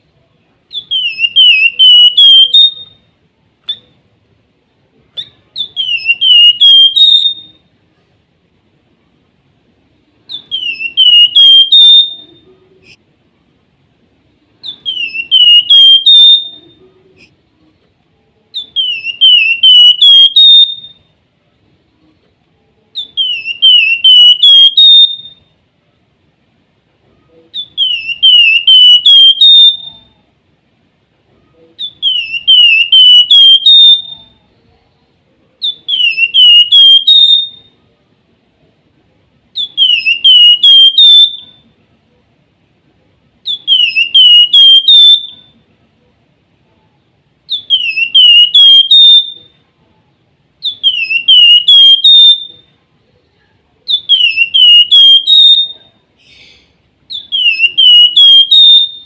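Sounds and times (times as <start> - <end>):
bird singing whistled phrase: 0.7 - 3.0, 5.2 - 7.6, 10.3 - 12.4, 14.6 - 16.8, 18.6 - 21.0, 23.0 - 25.4, 27.6 - 30.1, 31.8 - 34.3, 35.6 - 37.6, 39.6 - 41.6, 43.5 - 45.5, 47.5 - 49.5, 50.6 - 52.6, 53.9 - 56.5, 57.1 - 59.0.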